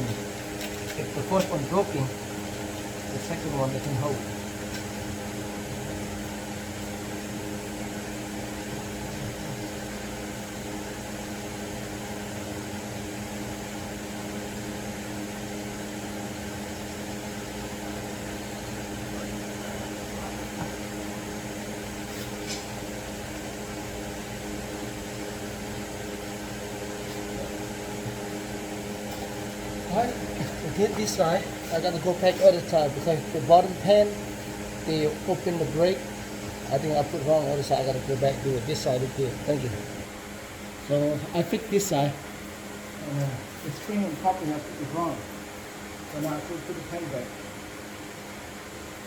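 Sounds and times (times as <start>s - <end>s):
machine hum with hiss: 0.0s - 49.0s.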